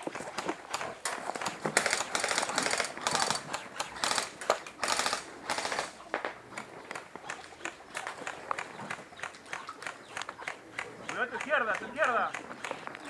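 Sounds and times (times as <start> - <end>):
airsoft rifle bursts: 1.8 - 6.2.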